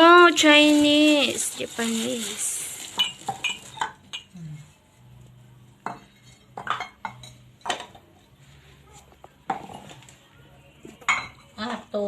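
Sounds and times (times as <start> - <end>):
dishes and glassware clinking: 2.9 - 4.8, 5.8 - 8.2, 9.4 - 10.1, 10.9 - 11.9.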